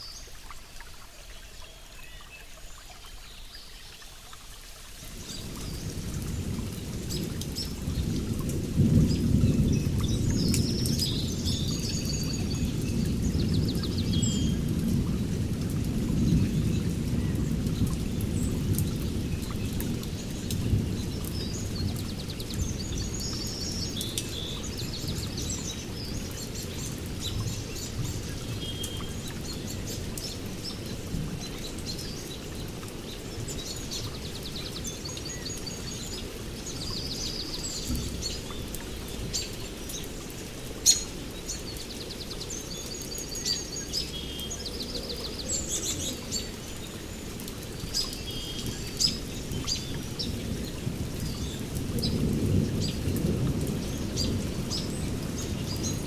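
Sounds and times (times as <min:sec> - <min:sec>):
steady rain: 0:00.0 - 0:56.0
rolling thunder: 0:05.2 - 0:23.0, 0:50.2 - 0:56.0
birds chirping: 0:16.1 - 0:56.0.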